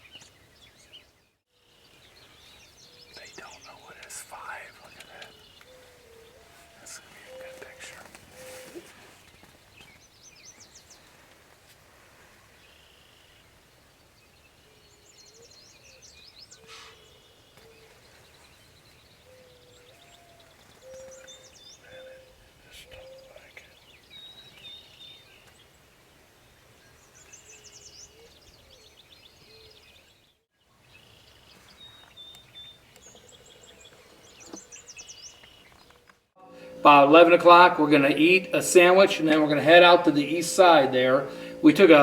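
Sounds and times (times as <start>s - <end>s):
low repeated bird call: 0.0s - 11.1s, 12.4s - 30.2s, 30.8s - 42.0s
high bird trills and chirps: 1.7s - 11.0s, 31.0s - 42.0s.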